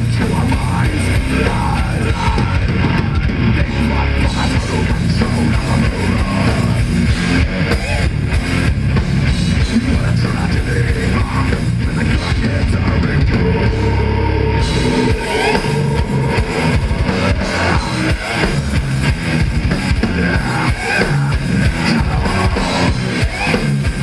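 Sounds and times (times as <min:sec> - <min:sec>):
bass guitar: 0:00.0 - 0:24.0
distorted electric guitars: 0:00.0 - 0:24.0
drum kit: 0:00.0 - 0:24.0.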